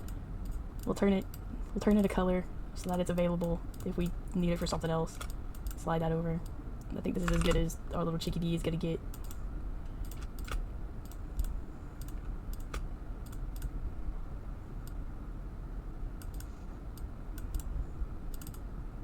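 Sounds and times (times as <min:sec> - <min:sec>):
low background hum: 0:00.0 - 0:19.0
keyboard and mouse clicks: 0:07.2 - 0:07.7, 0:09.1 - 0:13.7, 0:16.2 - 0:17.7, 0:18.3 - 0:18.7.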